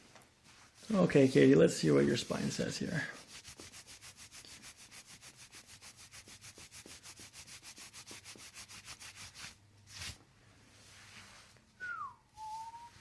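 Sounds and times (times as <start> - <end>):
faint rapid rubbing strokes: 0.4 - 11.6
short rustle: 9.3 - 11.8.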